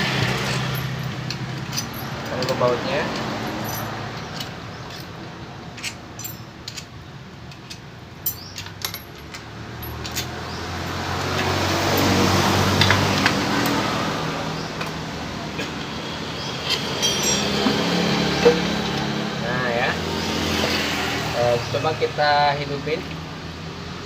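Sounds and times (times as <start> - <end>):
engine hum: 0.0 - 24.0
metal bolts and tools clinking: 0.1 - 12.2, 15.6 - 19.1.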